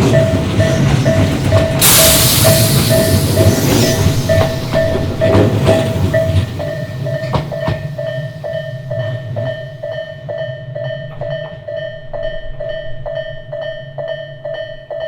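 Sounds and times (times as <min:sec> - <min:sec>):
train wheels clacking over joints: 0:00.0 - 0:13.2
level-crossing warning bell: 0:00.0 - 0:15.0.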